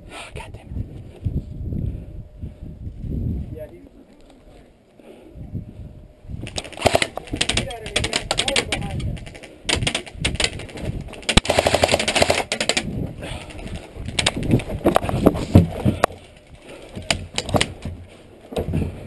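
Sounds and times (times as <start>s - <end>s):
airsoft gun firing: 6.5s - 8.6s, 11.2s - 12.9s.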